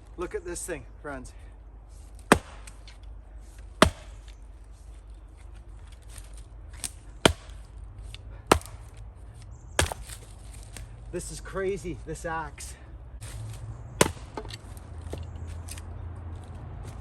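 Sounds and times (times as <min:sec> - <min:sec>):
axe chopping firewood: 0:02.0 - 0:04.4, 0:05.3 - 0:10.9, 0:13.2 - 0:15.9.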